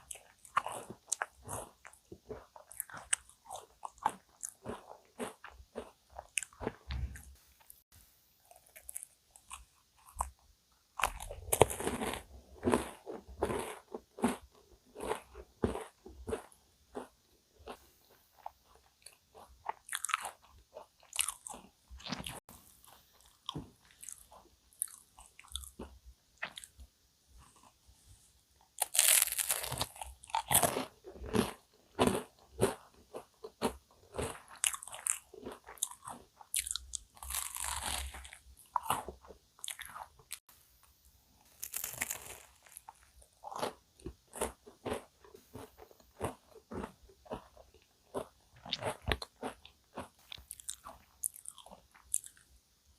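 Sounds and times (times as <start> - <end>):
chewing: 0.0 - 7.8, 11.0 - 26.8, 28.8 - 40.4, 41.6 - 52.5
crisp crust crunching: 28.8 - 40.4, 41.5 - 52.4.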